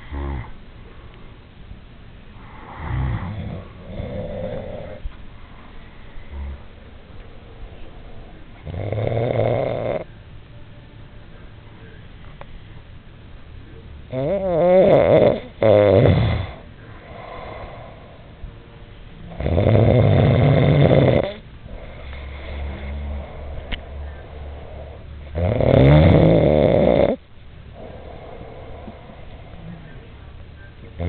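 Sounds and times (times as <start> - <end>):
soft snoring breaths: 2.4 - 10.1, 14.1 - 18.4, 19.3 - 31.0
men snoring loudly: 2.6 - 5.0, 8.6 - 10.0, 14.1 - 17.8, 19.3 - 27.2.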